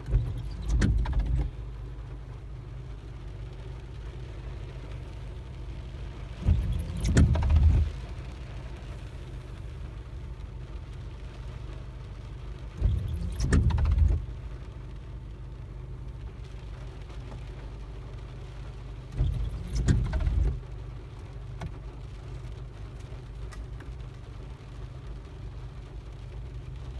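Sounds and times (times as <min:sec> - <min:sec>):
wiper blades squeaking on glass: 0:00.0 - 0:01.5, 0:06.4 - 0:07.9, 0:12.8 - 0:14.2, 0:19.2 - 0:20.6
low car rumble: 0:00.0 - 0:26.9.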